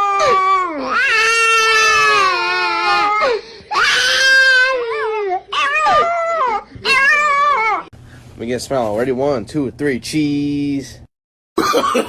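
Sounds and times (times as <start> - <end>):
dog howling and crying: 0.0 - 7.9.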